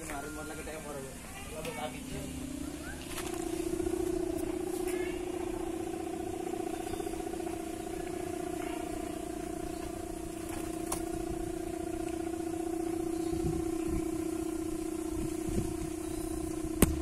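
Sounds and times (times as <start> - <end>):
kite hummer droning: 0.0 - 17.0
low wind rumble: 12.7 - 17.0.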